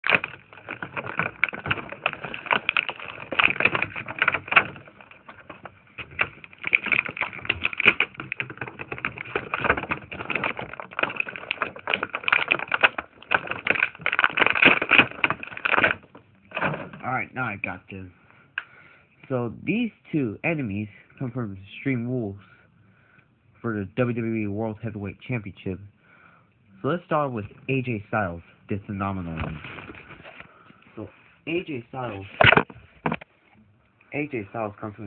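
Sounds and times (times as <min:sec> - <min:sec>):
plastic and cardboard crackling: 0:00.0 - 0:18.0, 0:28.7 - 0:35.0
dense clicks: 0:00.0 - 0:19.0, 0:28.8 - 0:35.0.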